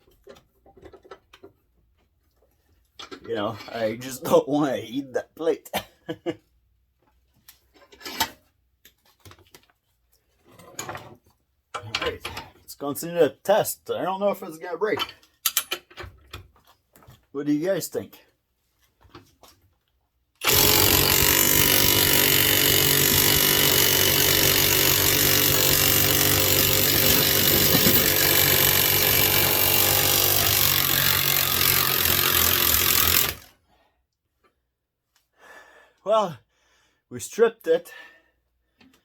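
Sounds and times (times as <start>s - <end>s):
impact wrench hammering bolt: 20.4s - 33.5s.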